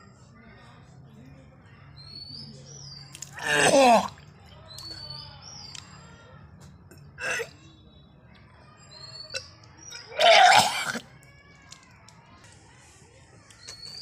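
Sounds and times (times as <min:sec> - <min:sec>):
birds chirping: 0:01.4 - 0:06.4, 0:07.0 - 0:11.0, 0:13.4 - 0:14.0
person retching: 0:03.3 - 0:04.2, 0:07.2 - 0:07.5, 0:09.3 - 0:11.0.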